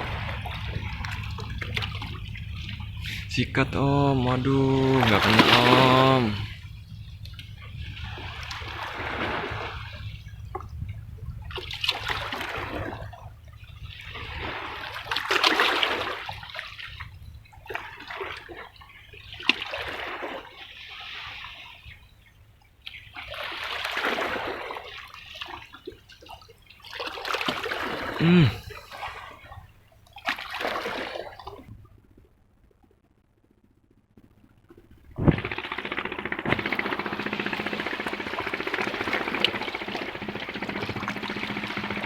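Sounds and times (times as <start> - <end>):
waves splashing against rocks: 0.0 - 6.6, 8.0 - 10.2, 14.0 - 17.0, 35.2 - 42.0.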